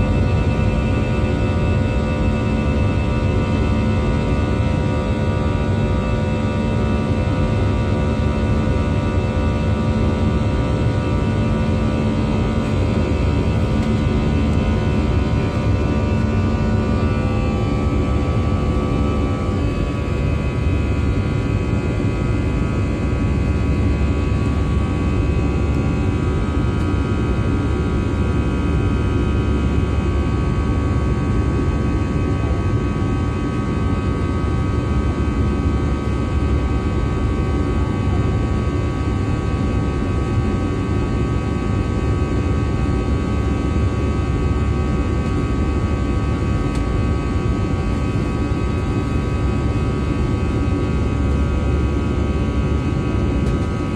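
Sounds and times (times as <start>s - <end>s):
jet engines roaring: 11.0s - 23.0s.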